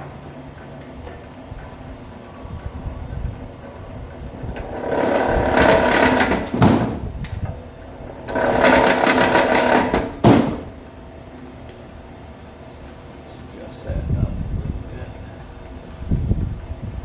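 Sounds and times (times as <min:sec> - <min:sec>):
motor humming: 0:00.0 - 0:17.0
wire stripping machine running: 0:00.0 - 0:17.0.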